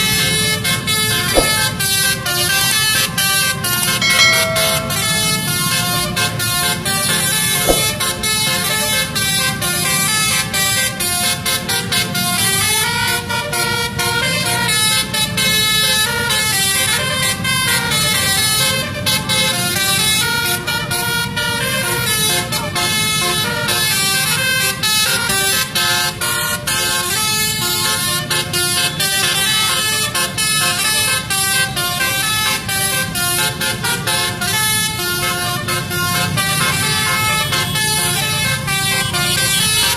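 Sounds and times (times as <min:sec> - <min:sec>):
air horn playing a melody: 0:16.0 - 0:39.9.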